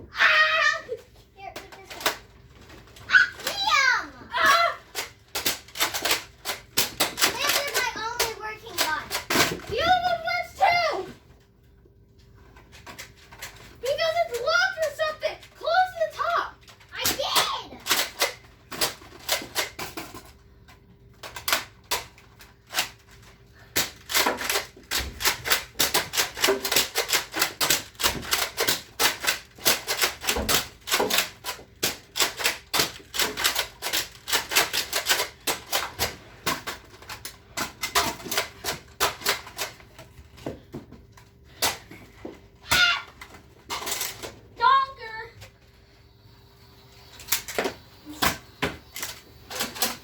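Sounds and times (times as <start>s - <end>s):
toy blasters clacking: 1.6s - 2.3s, 3.1s - 10.8s, 13.0s - 20.4s, 21.2s - 23.2s, 23.8s - 40.0s, 42.6s - 45.2s, 46.7s - 50.0s.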